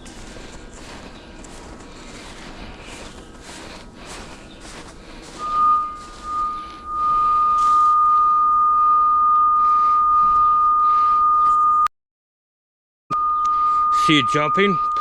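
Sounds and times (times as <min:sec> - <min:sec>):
high-pitched receiver tone: 0:05.4 - 0:11.9, 0:13.1 - 0:15.0.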